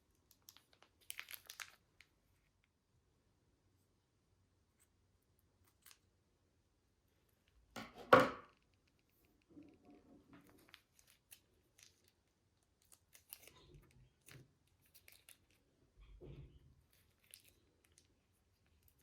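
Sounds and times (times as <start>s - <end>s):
slime squishing: 9.1s - 16.0s.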